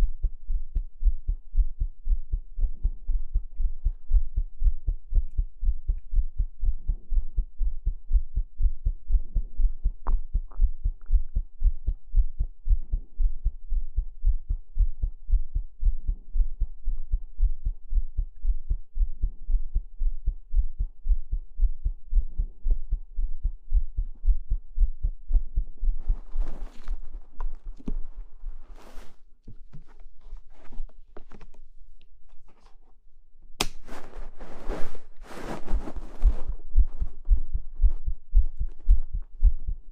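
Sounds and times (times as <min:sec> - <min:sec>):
heartbeat thumps: 0:00.0 - 0:30.0, 0:33.9 - 0:39.9
scratchy rustling noise: 0:26.0 - 0:31.5, 0:33.7 - 0:37.4.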